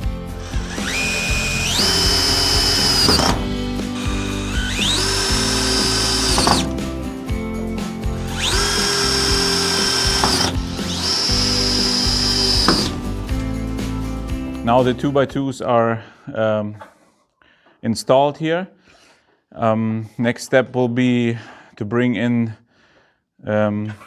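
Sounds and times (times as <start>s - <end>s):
power drill driving screws into wood: 0.0s - 7.0s, 8.1s - 13.4s
background music: 0.0s - 15.6s.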